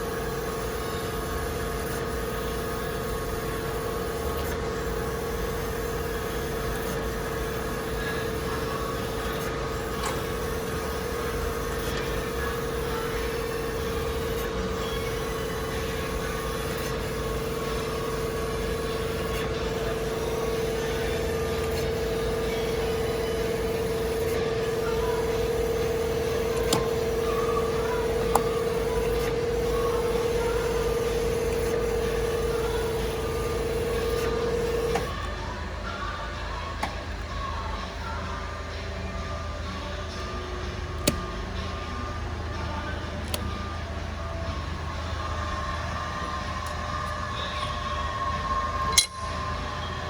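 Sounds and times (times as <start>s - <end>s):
surface grinder humming: 0.0s - 35.2s.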